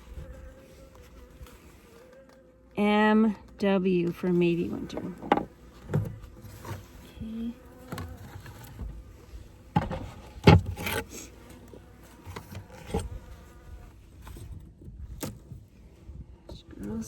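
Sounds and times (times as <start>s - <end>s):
bees buzzing: 0.0s - 14.2s
hive frames knocking and scraping: 3.4s - 15.7s.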